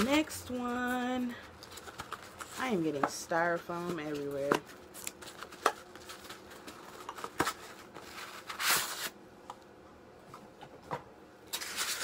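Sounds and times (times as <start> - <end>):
hands rustling styrofoam packing: 4.9 - 9.2, 11.5 - 12.0.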